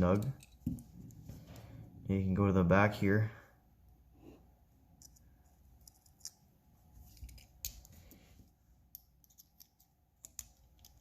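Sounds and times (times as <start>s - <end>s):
small metal parts clicking: 5.8s - 6.4s.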